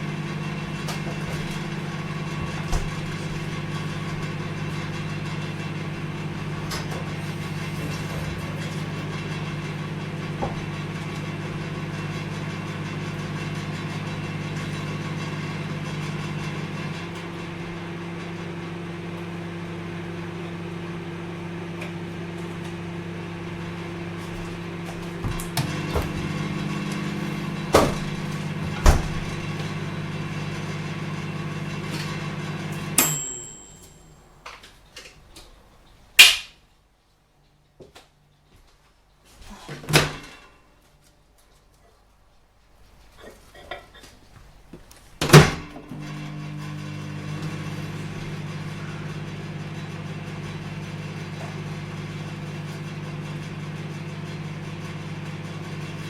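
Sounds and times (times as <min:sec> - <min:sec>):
microwave oven humming: 0:00.0 - 0:36.1, 0:44.0 - 0:56.0
loud clunks: 0:24.6 - 0:29.9.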